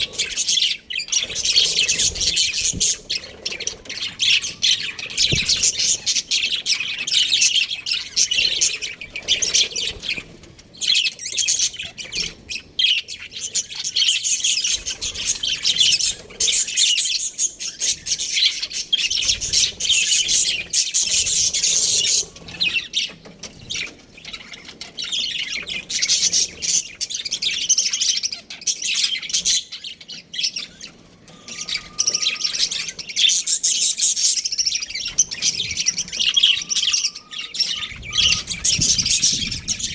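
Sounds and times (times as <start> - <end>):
budgerigars chirping and chattering: 0.0 - 39.9
harsh bird squawks: 30.7 - 39.9.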